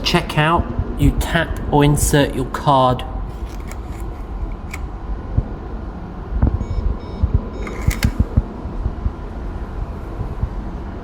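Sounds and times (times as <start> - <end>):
handling knocks and clicks: 3.4 - 4.9
card reader beeps: 6.6 - 8.4.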